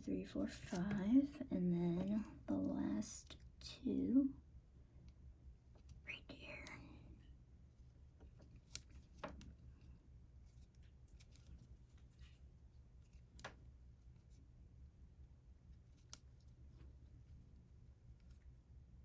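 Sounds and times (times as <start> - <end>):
low room hum: 0.0 - 19.0
crochet hook clicking and rustling: 8.2 - 9.6.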